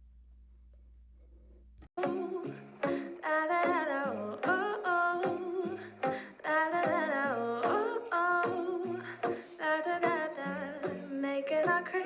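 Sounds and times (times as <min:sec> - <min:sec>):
woman singing or humming: 0:02.0 - 0:12.0.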